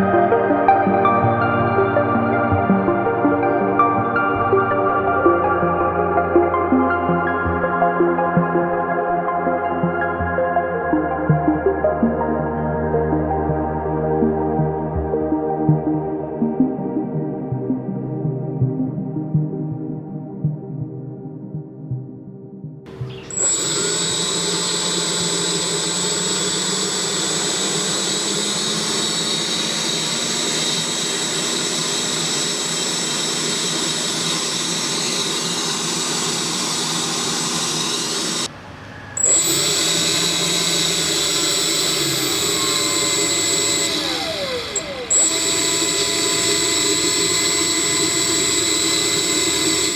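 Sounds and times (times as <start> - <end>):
small motor fan whining: 22.9 - 49.9.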